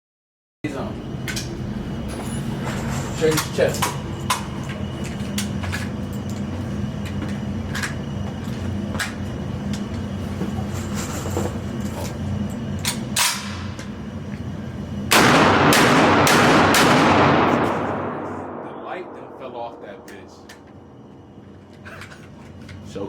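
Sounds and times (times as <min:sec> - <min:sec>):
ventilation hum: 0:00.6 - 0:23.0
loud rapid gunshots echoing: 0:15.1 - 0:18.1
faint gunshots: 0:15.1 - 0:18.8.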